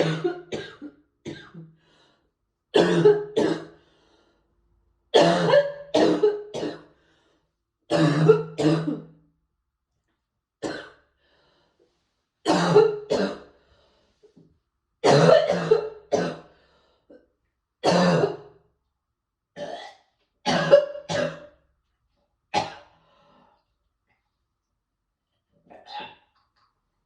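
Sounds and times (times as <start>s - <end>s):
person coughing: 0.0s - 1.7s, 2.8s - 3.7s, 5.2s - 6.9s, 7.9s - 9.1s, 12.5s - 13.5s, 15.0s - 16.5s, 17.8s - 18.4s, 19.6s - 21.5s.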